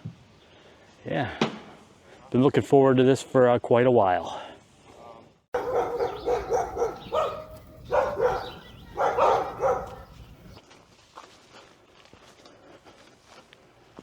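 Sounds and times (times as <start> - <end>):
dog barking: 5.6 - 10.4.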